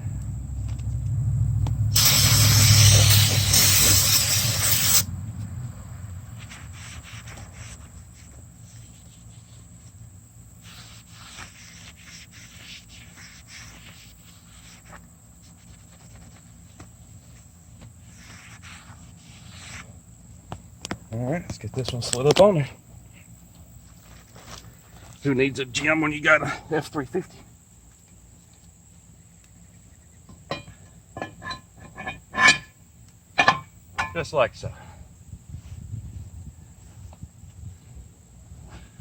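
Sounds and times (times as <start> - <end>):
aerosol can spraying: 1.9 - 5.1.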